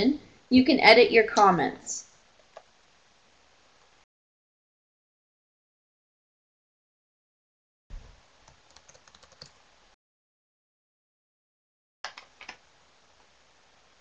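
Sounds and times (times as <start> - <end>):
keyboard typing: 8.4 - 9.6, 12.0 - 12.6.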